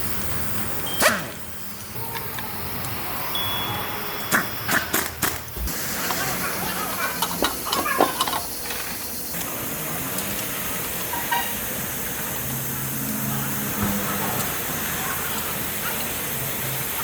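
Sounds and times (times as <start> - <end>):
steady hiss: 0.0 - 17.0
metal parts clicking and knocking: 7.2 - 9.2.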